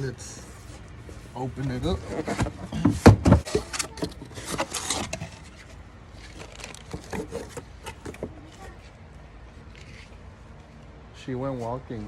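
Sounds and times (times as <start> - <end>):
cardboard rubbing and scraping: 0.0 - 8.8.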